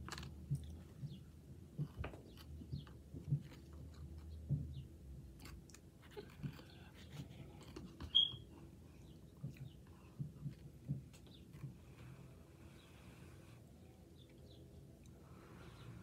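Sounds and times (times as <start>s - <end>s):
high-pitched chirp: 8.1s - 8.4s.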